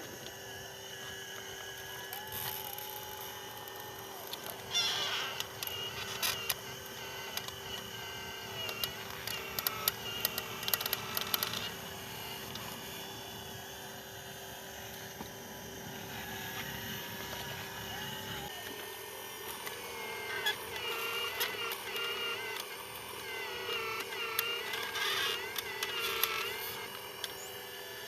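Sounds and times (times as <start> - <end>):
toy electric motors whining: 0.0 - 28.0
rapid clicking and scraping: 1.2 - 13.0, 19.4 - 27.6.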